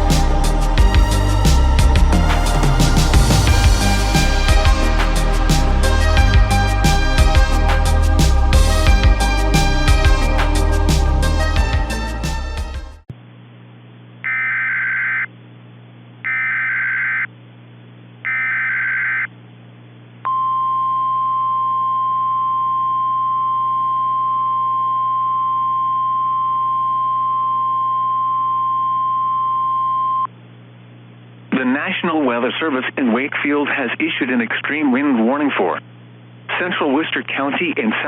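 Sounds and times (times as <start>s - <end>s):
low radio hum: 13.1s - 38.0s.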